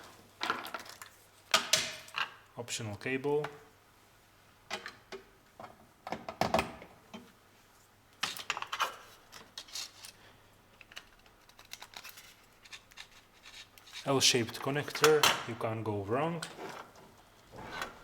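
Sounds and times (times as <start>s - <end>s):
plastic cables clicking and rattling: 10.8s - 13.2s.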